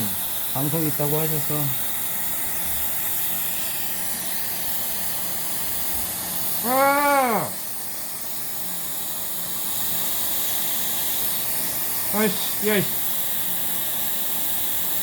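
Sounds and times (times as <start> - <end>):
man groaning in pain: 6.6 - 7.6
steady hiss: 12.1 - 14.4.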